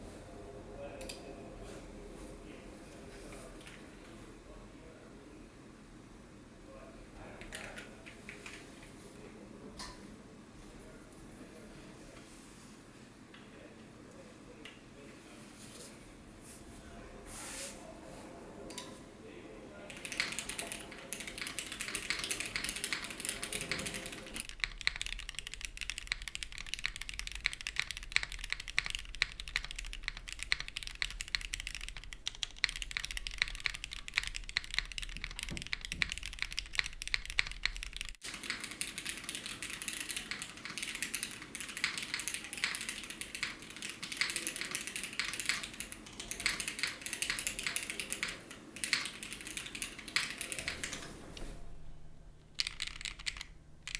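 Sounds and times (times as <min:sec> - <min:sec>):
mechanical keyboard typing: 0:07.4 - 0:08.6, 0:19.9 - 0:51.2, 0:52.4 - 0:53.9.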